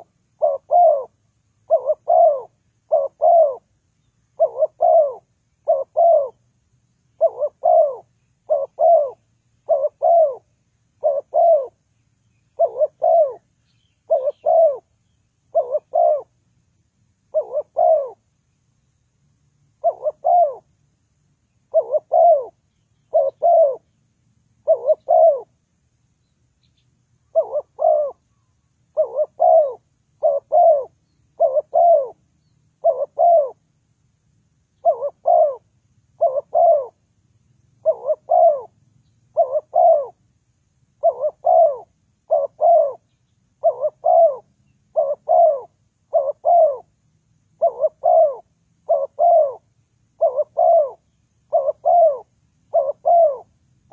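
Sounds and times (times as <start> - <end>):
dove cooing: 0.0 - 3.7, 4.3 - 6.4, 7.1 - 11.8, 12.5 - 14.9, 15.5 - 16.4, 17.3 - 18.2, 19.8 - 20.7, 21.7 - 23.9, 24.6 - 25.6, 27.3 - 28.3, 28.9 - 32.2, 32.8 - 33.6, 34.8 - 37.0, 37.8 - 40.2, 41.0 - 46.9, 47.6 - 53.9.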